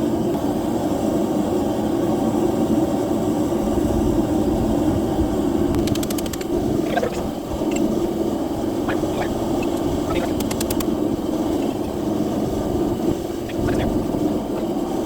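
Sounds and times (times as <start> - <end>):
forge blower rushing: 5.1 - 15.0
faint sharp clicks: 9.6 - 10.9.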